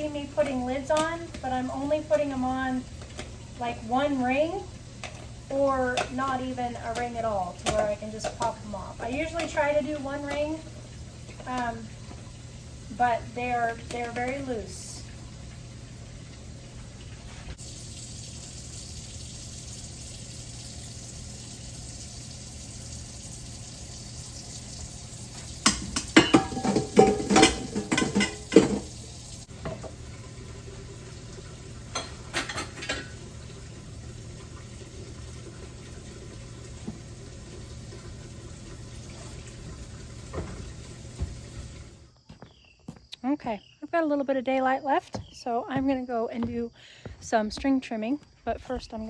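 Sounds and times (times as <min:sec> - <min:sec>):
glass jars and lids clinking: 0:25.6 - 0:28.8.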